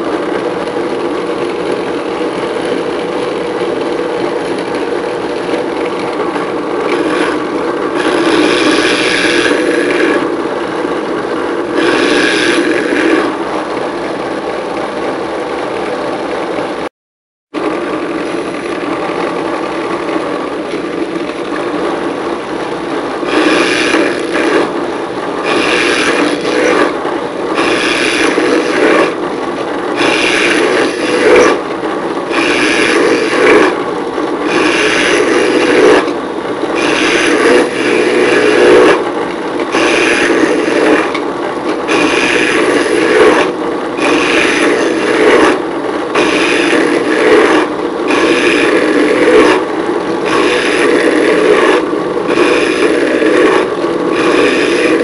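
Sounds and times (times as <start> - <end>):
mechanical hum: 0.0 - 16.9, 17.5 - 55.0
tool scraping wood: 4.1 - 10.4, 11.7 - 13.4, 23.2 - 24.8, 25.4 - 29.2, 30.0 - 31.6, 32.3 - 33.8, 34.4 - 36.2, 36.8 - 55.0.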